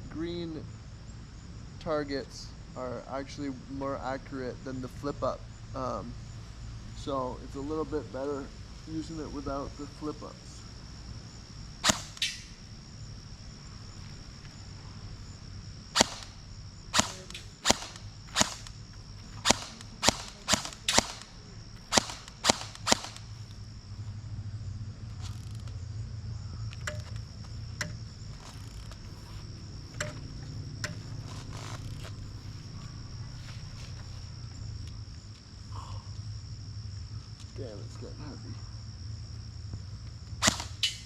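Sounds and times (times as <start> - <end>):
airsoft rifle single shots: 11.8 - 12.6, 15.9 - 18.8, 19.4 - 23.4, 40.4 - 41.0
faint clicks: 26.7 - 29.1.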